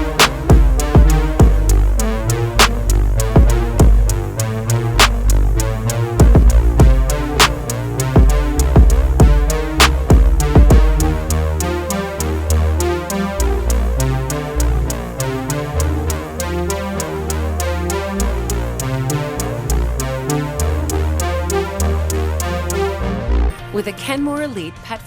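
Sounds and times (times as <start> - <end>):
steady tick: 0.0 - 1.8, 2.6 - 4.2, 5.0 - 11.2
drum-machine beat: 0.0 - 12.9, 15.5 - 22.8
bass line: 0.0 - 23.6
synthesizer: 0.0 - 25.0.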